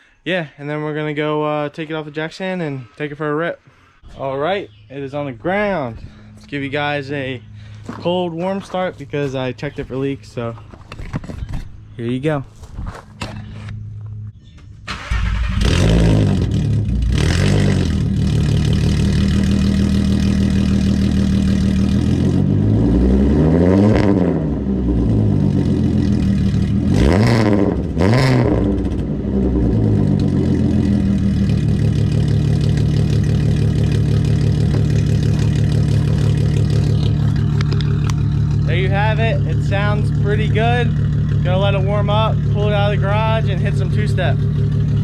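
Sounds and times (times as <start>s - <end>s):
car engine starting and revving: 14.8s - 45.0s.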